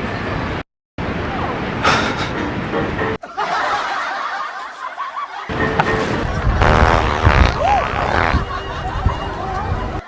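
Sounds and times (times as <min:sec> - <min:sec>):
snickering and chuckling laughter: 0:03.2 - 0:06.5.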